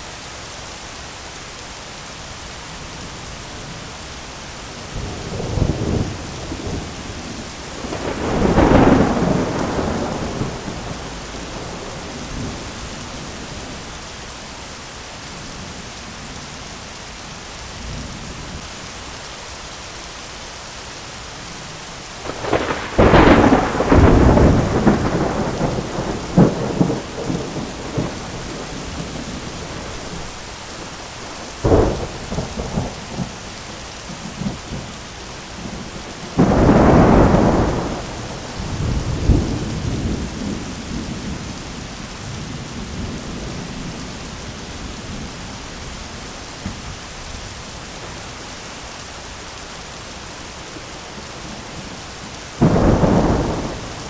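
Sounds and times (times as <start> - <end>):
steady rain hiss: 0.0 - 54.0
sharp thunder clap: 7.8 - 12.6, 22.3 - 30.3
thunder rolling: 7.8 - 12.8, 22.2 - 30.4, 31.3 - 33.4, 35.6 - 44.2, 52.6 - 54.0.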